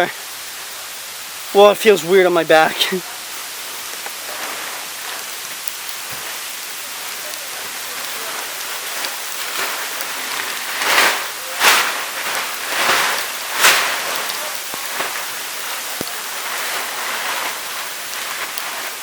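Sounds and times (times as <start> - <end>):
volcanic ash falling: 0.0 - 19.0.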